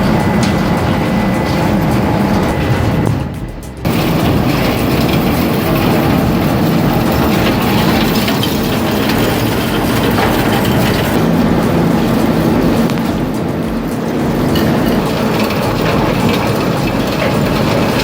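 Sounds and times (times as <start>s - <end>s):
wood shredder grinding: 0.0s - 18.0s.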